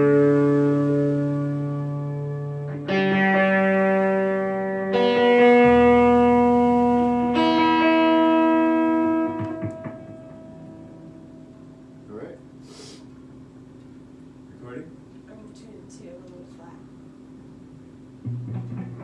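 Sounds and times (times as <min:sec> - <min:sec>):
electric guitar chords: 0:00.0 - 0:12.1, 0:18.2 - 0:19.0.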